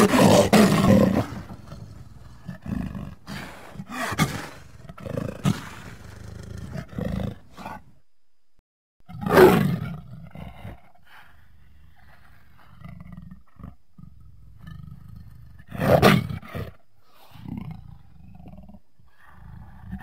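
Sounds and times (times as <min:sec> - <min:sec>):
creature roaring: 0:00.0 - 0:07.8, 0:09.1 - 0:10.8
creature growls: 0:00.0 - 0:07.9, 0:09.1 - 0:20.0.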